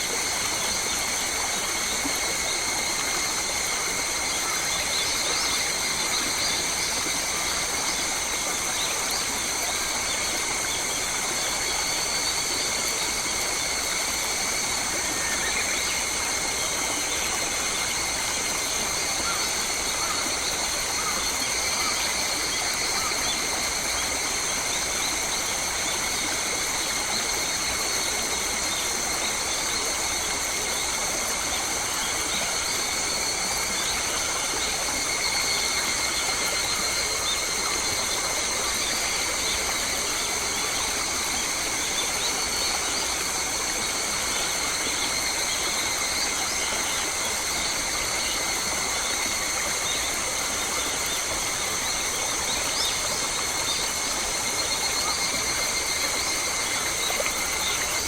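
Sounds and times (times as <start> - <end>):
high-pitched insect chorus: 0.0 - 58.0.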